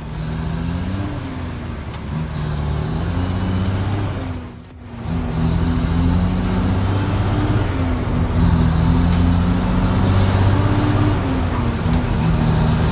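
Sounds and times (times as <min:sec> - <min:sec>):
diesel truck engine running: 0:00.0 - 0:12.9.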